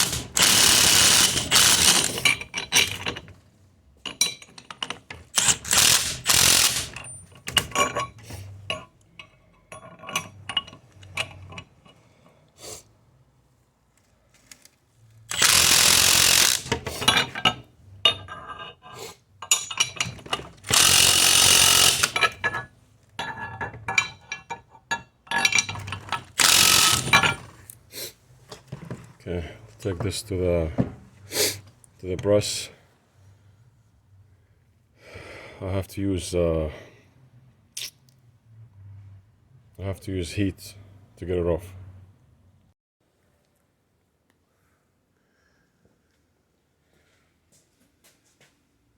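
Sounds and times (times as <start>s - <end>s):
power tool bursts: 0.0s - 2.2s, 5.4s - 7.0s, 15.3s - 16.9s, 20.6s - 22.3s, 26.3s - 27.4s
metal clinks and tool clatter: 0.0s - 3.4s, 4.0s - 12.4s, 17.0s - 27.6s.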